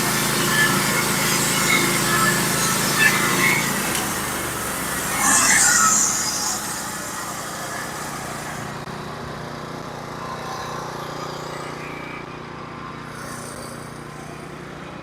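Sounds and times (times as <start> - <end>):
loud high-pitched hissing rush: 0.0 - 8.9
sawmill engine running: 0.0 - 13.1.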